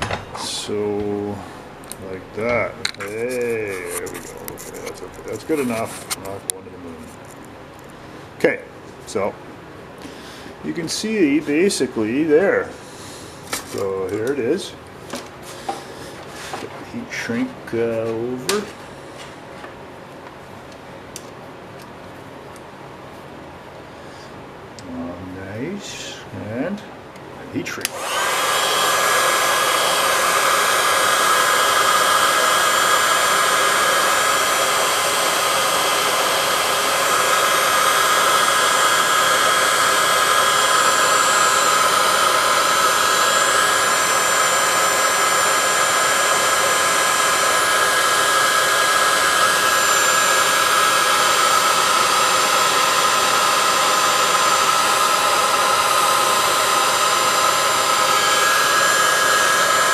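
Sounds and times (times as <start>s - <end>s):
heat gun blowing: 3.1s - 6.3s, 27.8s - 59.9s.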